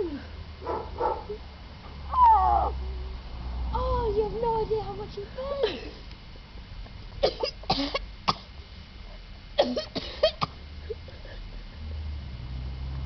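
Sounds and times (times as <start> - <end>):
man coughing: 9.6 - 11.3.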